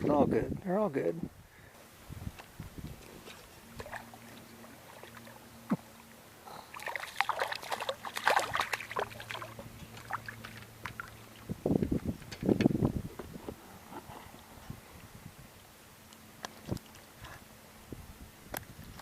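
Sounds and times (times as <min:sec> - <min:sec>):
faint low hum: 0:00.0 - 0:19.0
water splashing and dripping: 0:03.7 - 0:06.1, 0:06.7 - 0:12.1.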